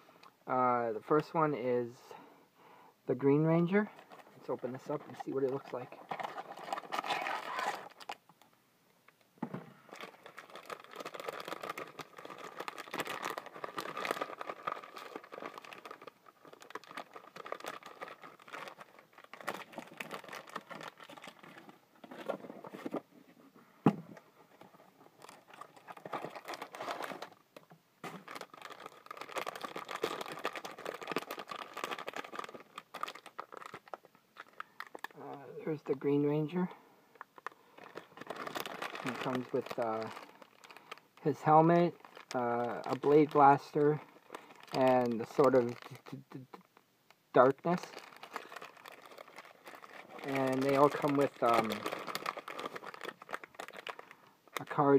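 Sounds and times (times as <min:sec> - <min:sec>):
packaging crinkling and tearing: 0:03.6 - 0:08.2, 0:09.9 - 0:22.9, 0:24.7 - 0:27.4, 0:28.0 - 0:36.6, 0:37.2 - 0:46.8, 0:47.4 - 0:54.9.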